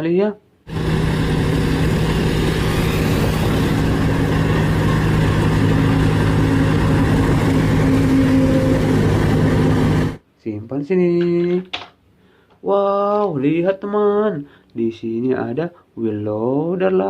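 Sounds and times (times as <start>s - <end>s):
vehicle engine rumbling hum: 0.7s - 10.2s.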